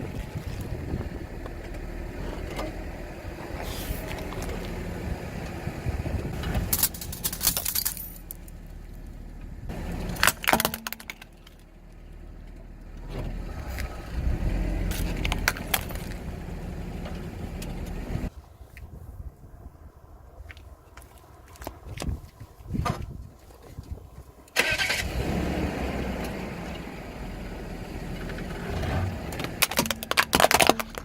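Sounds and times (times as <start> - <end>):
objects crunching under tyres: 0.0 - 18.3, 27.9 - 31.0
car engine and tyre rumble: 0.0 - 31.0.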